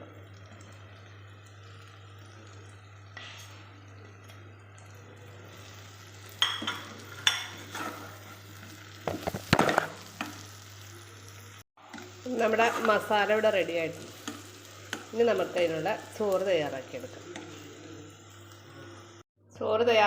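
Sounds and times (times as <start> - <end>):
food sizzling in a pan: 0.0 - 19.3
spoon scraping and knocking pan: 6.3 - 10.5.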